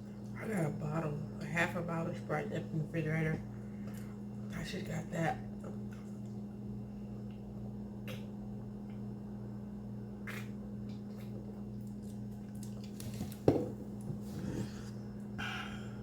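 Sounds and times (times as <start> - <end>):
chewing and wet mouth clicks: 10.3 - 13.0.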